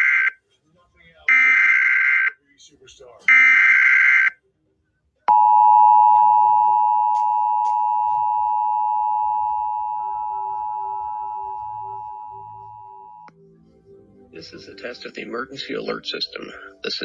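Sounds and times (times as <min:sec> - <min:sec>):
two-tone droning alert signal: 0:05.3 - 0:13.3.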